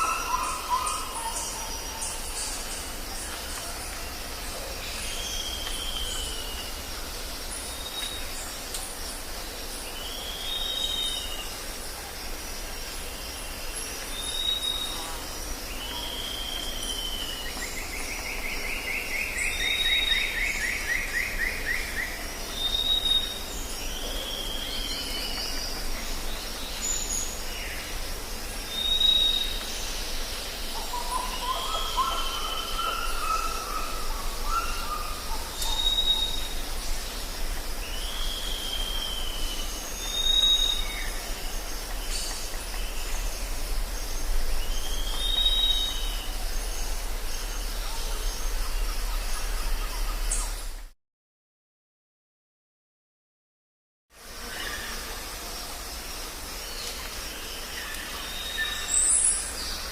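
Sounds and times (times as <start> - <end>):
bird calls: 0.0 - 4.0, 28.7 - 37.0
insect chorus: 0.0 - 50.9, 54.1 - 59.9.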